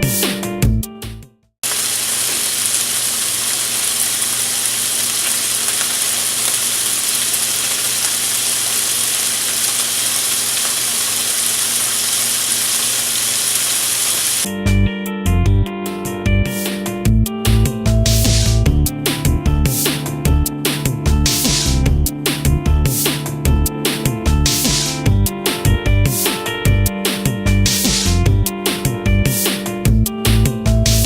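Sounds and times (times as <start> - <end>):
bacon sizzling: 1.6 - 14.5.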